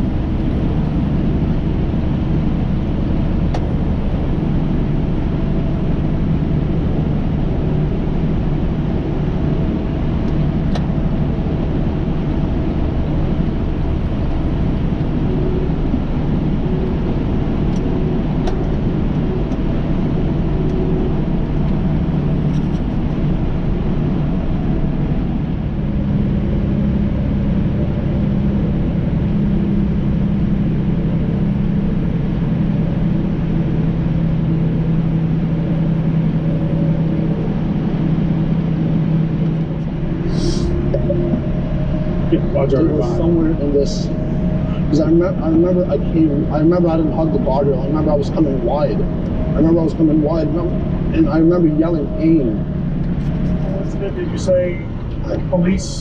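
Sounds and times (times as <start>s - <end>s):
road noise: 0.0s - 56.0s
truck engine drone: 0.0s - 56.0s.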